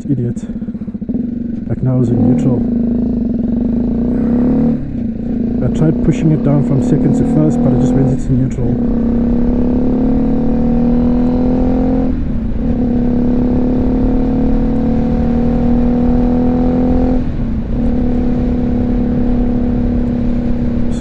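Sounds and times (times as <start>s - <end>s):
motorcycle engine running: 0.0s - 21.0s
wind noise on microphone: 8.7s - 21.0s.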